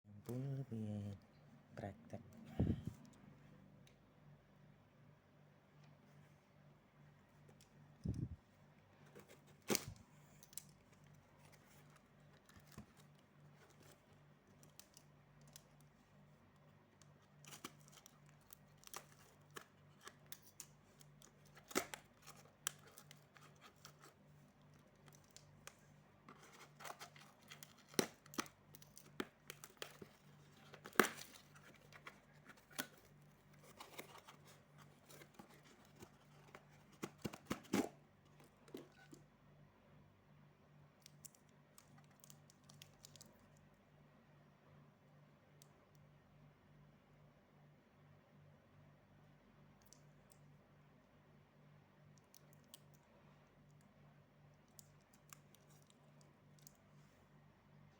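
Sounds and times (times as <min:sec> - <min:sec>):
packaging crinkling and tearing: 0:17.4 - 0:24.2, 0:26.3 - 0:39.2
sharp clicks and snaps: 0:41.0 - 0:43.6.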